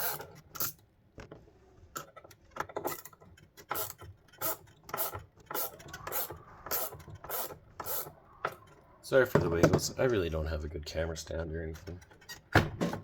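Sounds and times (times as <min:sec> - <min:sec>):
ratcheting hand tool rasping: 0:02.9 - 0:08.8.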